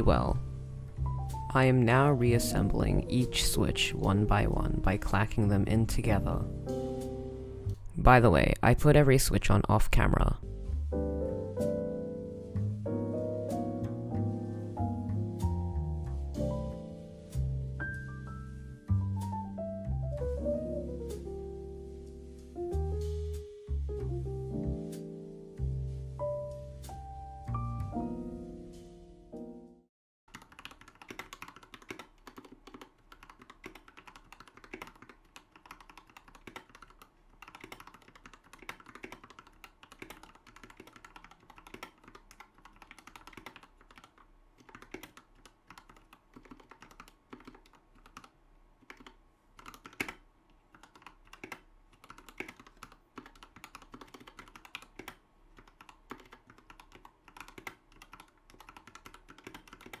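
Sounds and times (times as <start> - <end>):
mechanical keyboard typing: 30.3 - 60.0.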